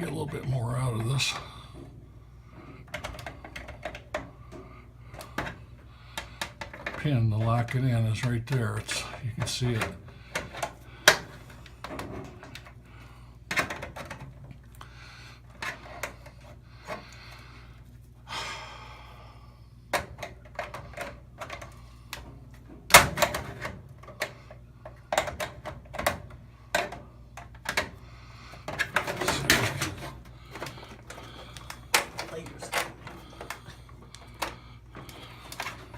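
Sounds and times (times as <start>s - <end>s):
steady low hum: 0.0s - 35.9s.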